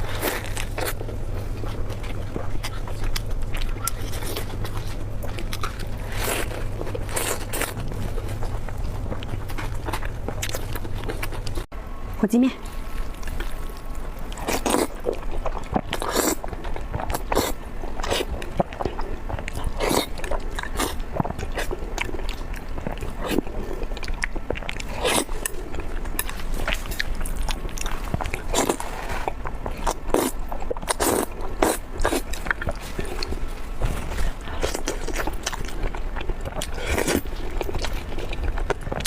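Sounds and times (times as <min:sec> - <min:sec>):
biting and chewing: 0:00.0 - 0:11.7, 0:12.6 - 0:39.0.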